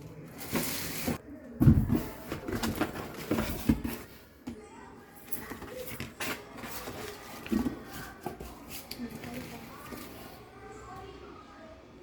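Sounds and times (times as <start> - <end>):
knocks and scrapes of objects handled: 0.4 - 4.6.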